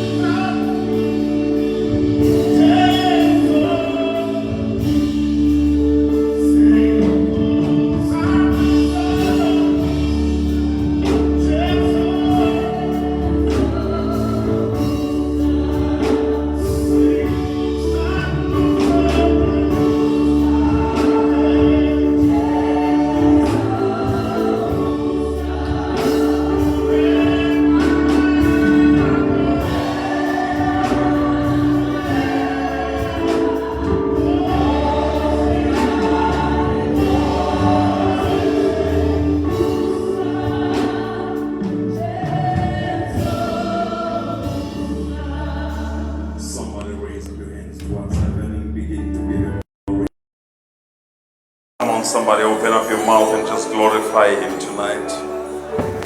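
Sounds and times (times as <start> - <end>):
choir singing: 0.0 - 47.6, 51.8 - 56.0
sustained keyboard chords: 0.0 - 50.1, 51.8 - 56.0.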